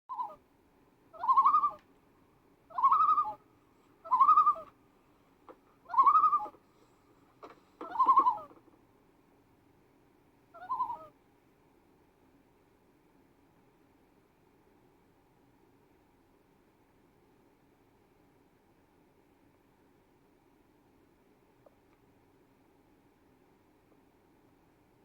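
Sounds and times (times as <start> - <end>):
loon calling: 0.1 - 0.4, 1.2 - 1.8, 2.7 - 3.4, 4.0 - 4.7, 5.9 - 6.6, 7.8 - 8.5, 10.6 - 11.1.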